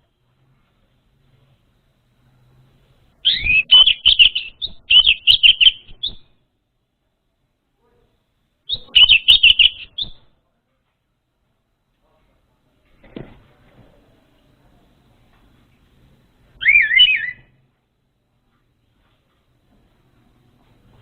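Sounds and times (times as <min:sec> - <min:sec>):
thrush singing whistled notes: 0:03.2 - 0:06.4, 0:08.7 - 0:10.2, 0:16.6 - 0:17.6.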